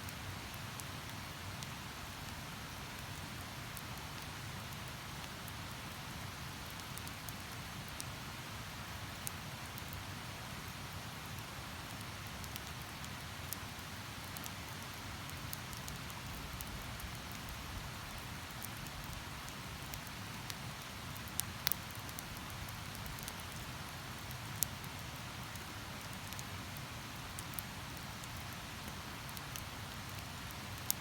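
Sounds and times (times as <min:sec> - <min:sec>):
campfire crackling and popping: 0:06.6 - 0:07.6, 0:12.2 - 0:31.0.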